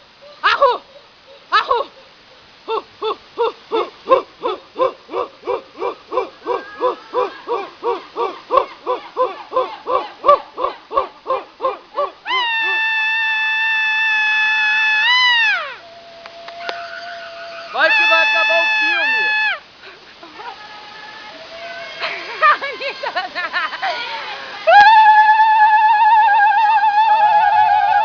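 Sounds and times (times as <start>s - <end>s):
person chanting hooting call: 2.6s - 12.9s, 14.0s - 19.7s, 24.6s - 28.0s
person yelling: 17.7s - 19.6s.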